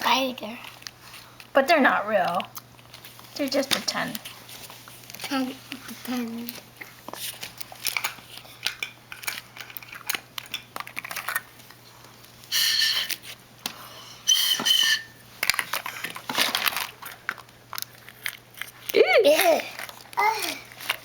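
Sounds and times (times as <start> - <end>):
plastic toys and wrappers rattling: 0.0 - 11.8, 15.4 - 21.0
short high-pitched tones: 14.3 - 15.2.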